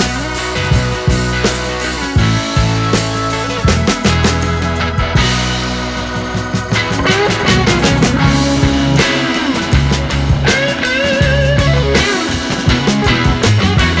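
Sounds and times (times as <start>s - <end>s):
rock music: 0.0s - 14.0s
wavering lead guitar line: 4.8s - 14.0s.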